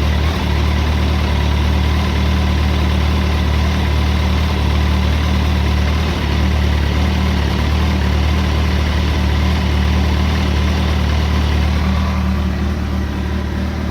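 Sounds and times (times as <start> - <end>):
motorcycle engine idling with clatter: 0.0 - 13.9.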